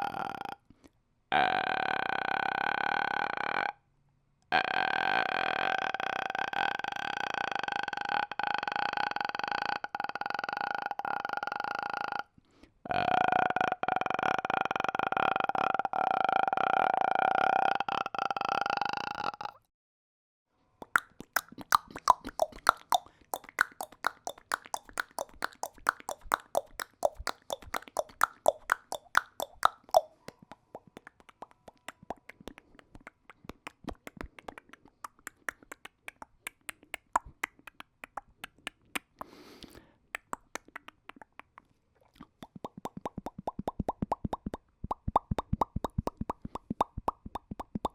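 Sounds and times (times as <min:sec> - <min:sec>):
man making mouth clicks and pops: 0:04.5 - 0:12.2, 0:17.3 - 0:19.7, 0:20.8 - 0:47.9.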